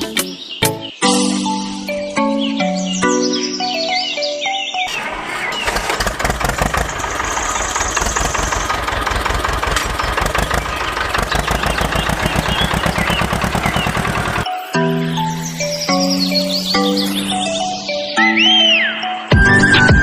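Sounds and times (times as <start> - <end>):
engine running: 4.9 - 14.5.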